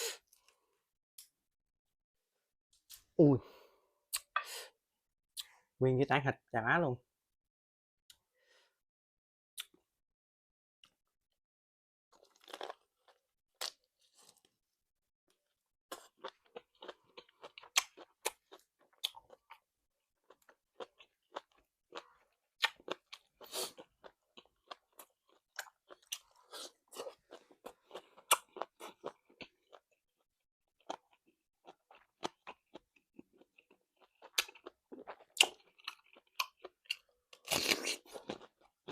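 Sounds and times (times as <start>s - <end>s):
chewing and crunching chicken skin: 12.1s - 14.6s, 15.9s - 38.9s.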